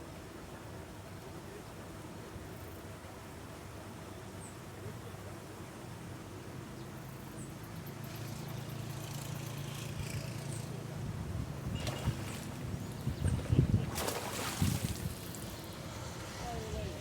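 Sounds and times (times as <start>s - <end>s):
low engine hum: 7.9s - 17.0s.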